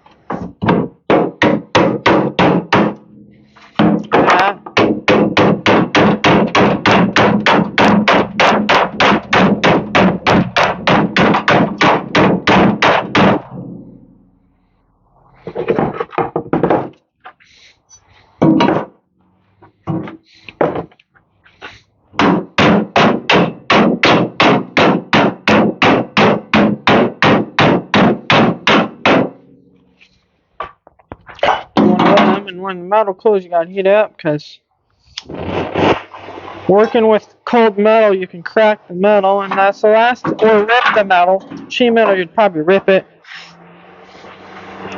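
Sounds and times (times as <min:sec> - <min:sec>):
scattered knocks: 0:00.2 - 0:13.9, 0:15.5 - 0:17.4, 0:18.4 - 0:19.0, 0:19.8 - 0:21.0, 0:22.2 - 0:29.5, 0:30.6 - 0:32.6, 0:39.3 - 0:42.2
hammer on wood block: 0:00.3 - 0:03.0, 0:03.7 - 0:13.8, 0:18.4 - 0:18.9, 0:22.2 - 0:29.5.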